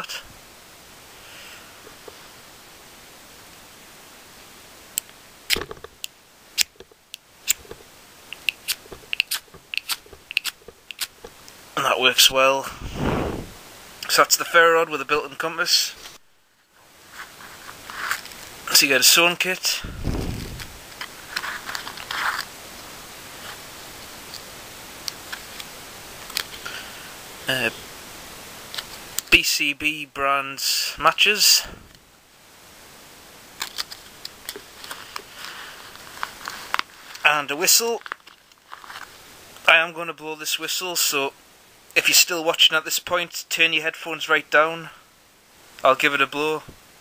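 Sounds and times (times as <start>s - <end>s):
small plastic and metal items clicking: 8.4s - 11.2s
packaging rustling: 38.0s - 39.2s.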